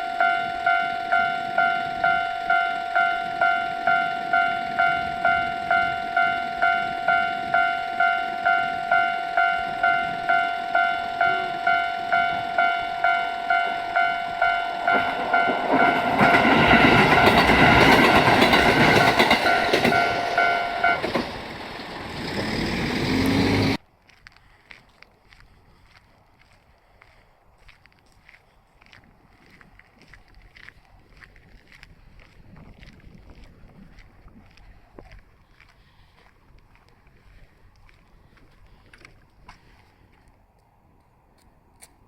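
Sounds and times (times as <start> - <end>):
level crossing bell dinging: 0.0 - 21.3
train rumble and rail clatter: 0.0 - 23.8.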